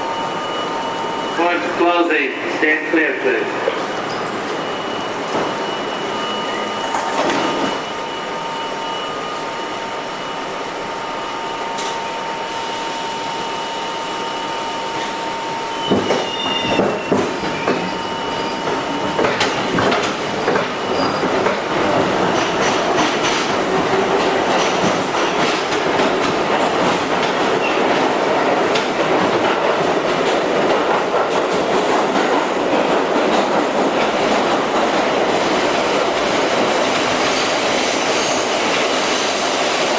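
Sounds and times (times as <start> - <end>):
steady high tone: 0.0 - 15.8
subway train rolling: 0.0 - 39.9
wheel squeal: 15.7 - 18.8, 20.8 - 21.3.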